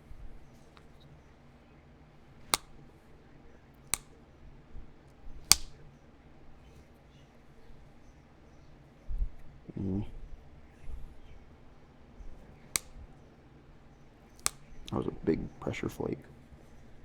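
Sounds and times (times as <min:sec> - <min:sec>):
stone flakes snapping off: 0:02.4 - 0:02.8, 0:03.9 - 0:04.2, 0:05.5 - 0:05.8, 0:12.6 - 0:13.0, 0:14.4 - 0:14.8.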